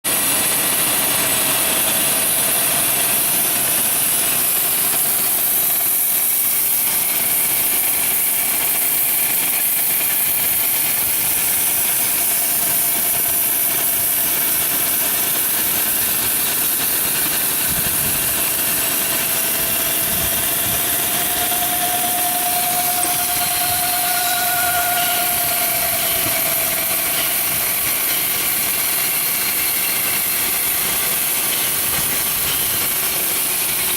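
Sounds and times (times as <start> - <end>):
faint whine: 18.3 - 31.0.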